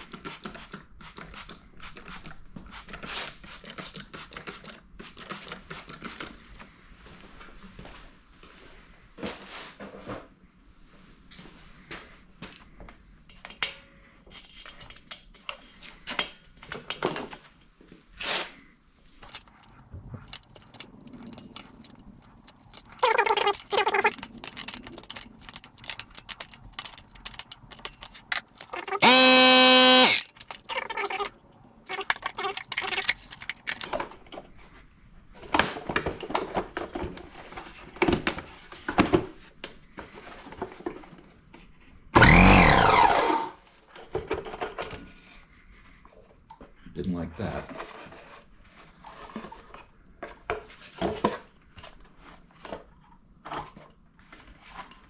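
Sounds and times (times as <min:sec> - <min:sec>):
clicks and knocks of tools: 0:19.3 - 0:31.3, 0:31.9 - 0:33.9.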